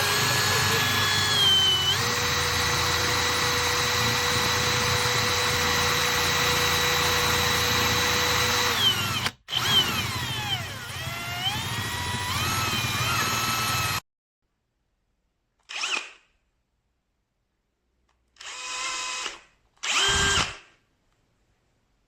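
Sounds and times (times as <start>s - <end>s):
cordless drill motor whining: 0.0s - 14.0s, 18.4s - 20.6s.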